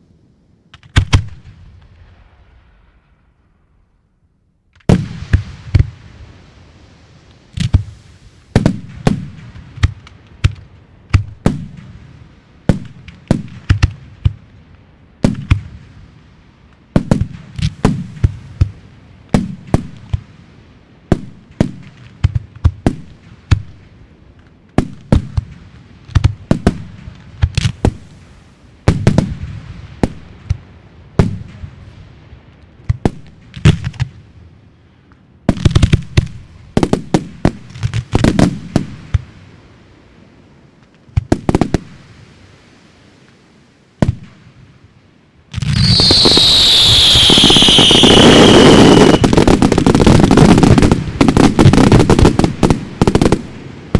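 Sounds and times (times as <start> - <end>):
fireworks bangs: 45.5 - 53.9.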